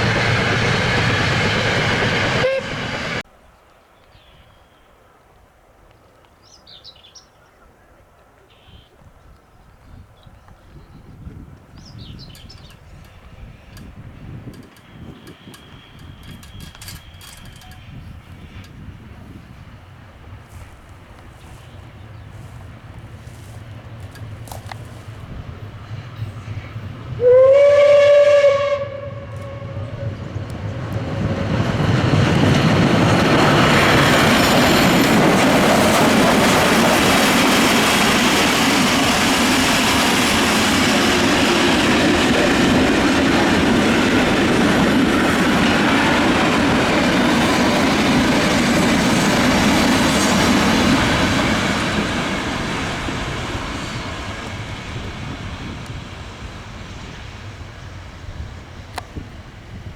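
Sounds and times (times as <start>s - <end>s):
steam locomotive whistle: 0.0s - 3.2s, 27.2s - 30.3s
train passing close by: 0.0s - 3.4s, 11.1s - 59.9s.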